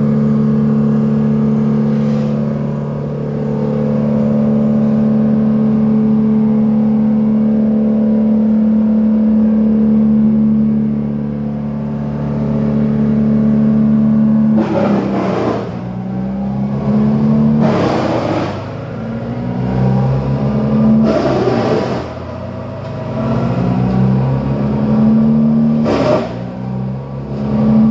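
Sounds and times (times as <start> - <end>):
chainsaw engine running: 14.5 - 20.4, 21.0 - 23.8
chainsaw rasping into wood: 14.6 - 16.0.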